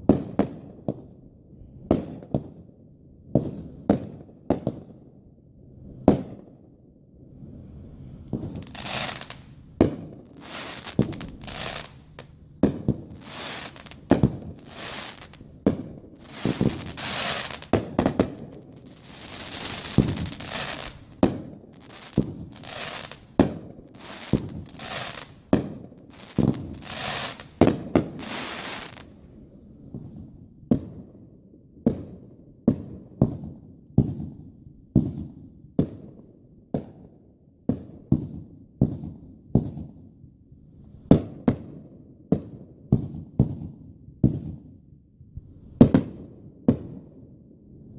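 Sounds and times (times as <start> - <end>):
fireworks crackling and hissing: 0.0 - 2.7, 3.3 - 31.1, 31.9 - 36.2, 40.6 - 44.8, 45.4 - 47.2
fireworks booming: 8.2 - 29.1.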